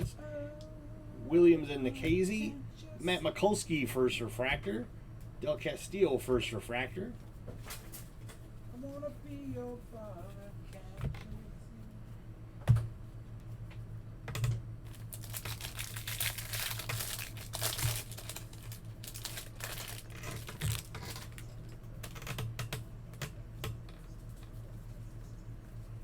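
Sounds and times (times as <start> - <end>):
steady low hum: 0.0 - 26.0
plastic crinkling and sliding: 14.9 - 21.6.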